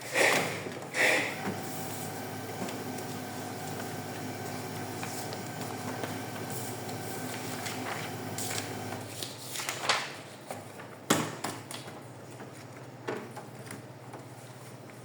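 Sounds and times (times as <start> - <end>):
steady hum: 1.0 - 9.1.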